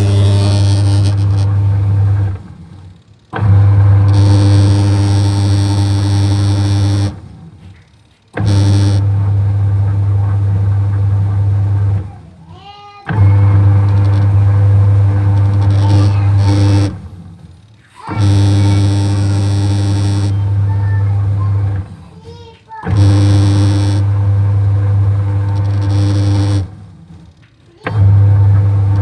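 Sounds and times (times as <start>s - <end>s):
short rising whine: 0.0s - 2.7s
washing machine motor humming: 0.0s - 29.0s.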